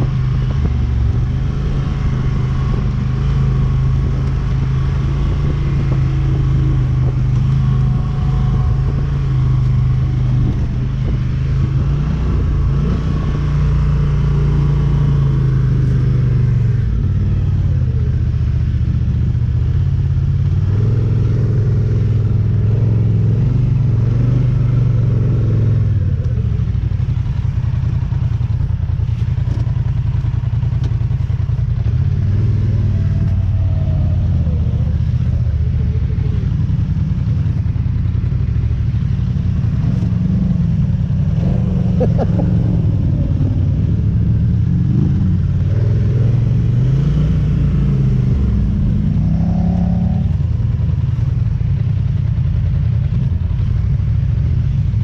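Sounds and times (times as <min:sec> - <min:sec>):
atv engine running: 0:00.0 - 0:55.0.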